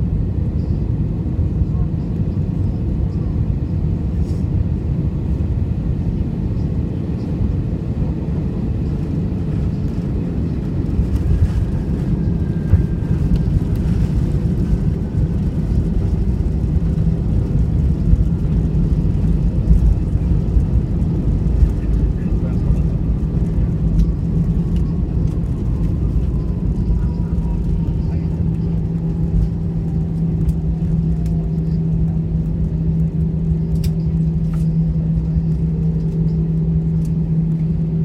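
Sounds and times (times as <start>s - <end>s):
airplane engines rumbling in cabin: 0.0s - 38.0s.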